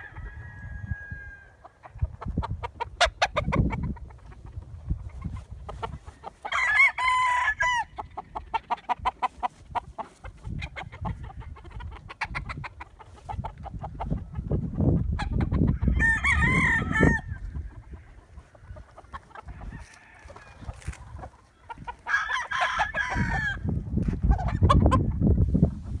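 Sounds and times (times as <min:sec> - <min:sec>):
rooster crowing: 0:00.0 - 0:01.6, 0:06.4 - 0:08.0, 0:15.8 - 0:17.4, 0:19.5 - 0:20.9, 0:22.1 - 0:23.7
chickens clucking: 0:01.4 - 0:06.6, 0:07.6 - 0:26.0.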